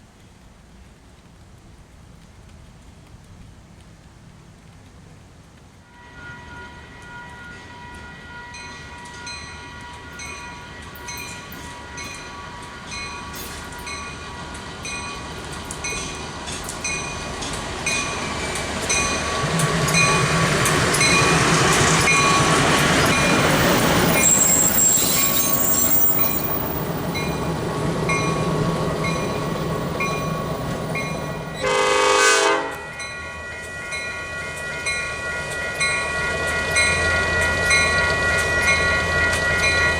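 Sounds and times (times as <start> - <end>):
train horn blast: 5.9 - 15.4, 31.5 - 34.8
locomotive engine passing: 6.0 - 39.9.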